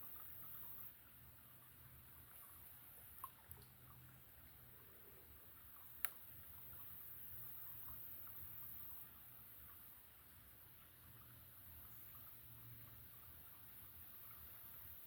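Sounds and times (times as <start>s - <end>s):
small ticks: 2.3s - 3.9s, 5.6s - 9.1s.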